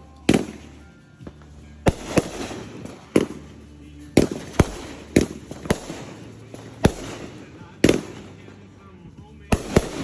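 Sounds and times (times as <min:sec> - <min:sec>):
fireworks bangs: 0:01.9 - 0:03.6, 0:04.2 - 0:08.6, 0:09.5 - 0:10.0.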